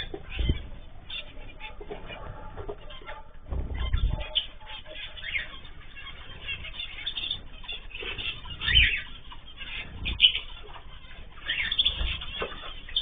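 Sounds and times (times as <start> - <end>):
cage birds chirping: 0.0 - 13.0
wings flapping: 0.0 - 13.0
low thumps: 1.8 - 4.6.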